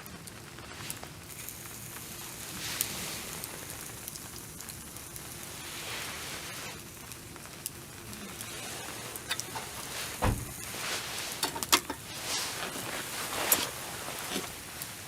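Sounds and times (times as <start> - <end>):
campfire crackling: 0.0 - 15.0
fire popping: 0.0 - 15.0
dull thump: 10.1 - 10.6.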